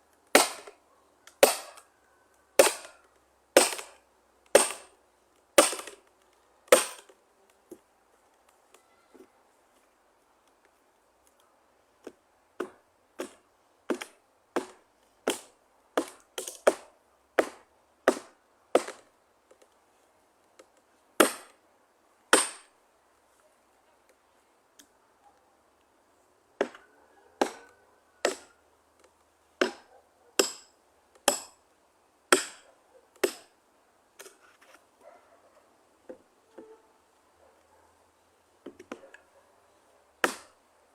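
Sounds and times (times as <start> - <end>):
wood being chopped: 0.3 - 0.8, 1.4 - 1.8, 2.6 - 3.0, 3.6 - 5.0, 5.6 - 6.0, 6.7 - 7.8, 12.0 - 19.1, 21.2 - 21.6, 22.3 - 22.7, 26.6 - 26.8, 27.4 - 31.6, 32.3 - 32.6, 33.2 - 33.5, 40.2 - 40.6.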